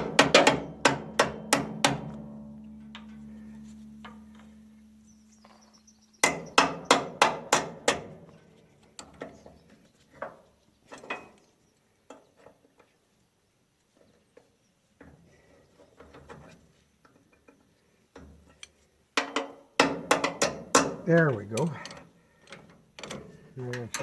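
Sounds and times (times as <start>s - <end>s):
low hum: 1.6s - 6.2s.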